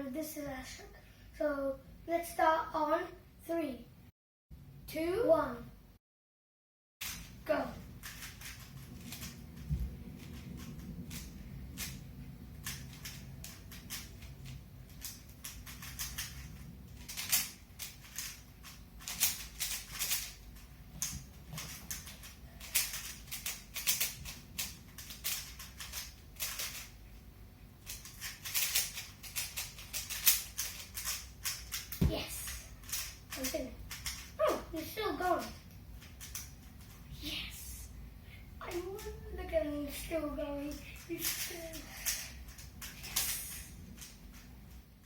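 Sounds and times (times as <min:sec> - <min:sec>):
plastic puzzle cube clicking: 0:12.6 - 0:20.3, 0:21.0 - 0:26.9, 0:27.9 - 0:32.0.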